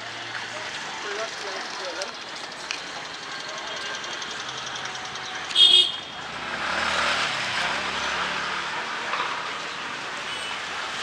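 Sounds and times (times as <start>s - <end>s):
vehicle passing on wet street: 6.2s - 11.0s.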